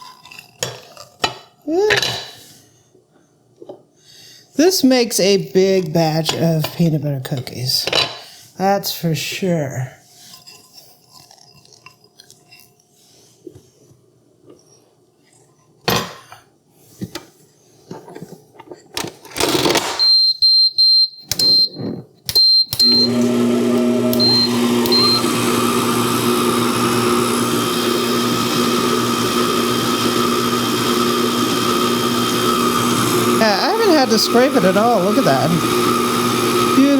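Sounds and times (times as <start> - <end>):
stand mixer motor humming: 22.8 - 36.9.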